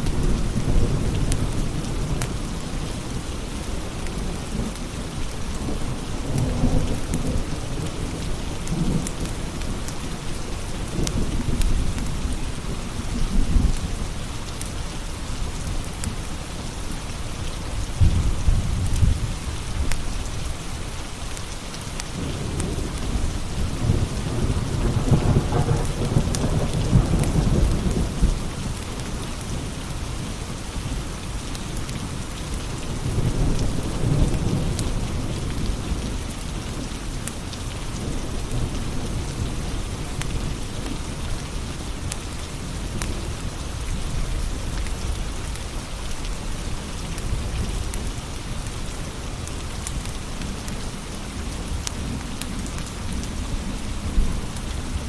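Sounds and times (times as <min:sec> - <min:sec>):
steady rain: 0:00.0 - 0:55.0
low thunder rumbling: 0:17.8 - 0:20.6, 0:22.2 - 0:31.0.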